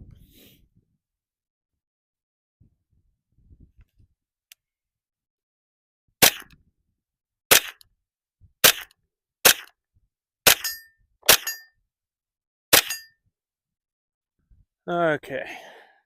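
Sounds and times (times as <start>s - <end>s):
rifle shots: 6.2s - 6.5s, 7.5s - 7.8s, 8.6s - 9.7s, 10.5s - 10.7s.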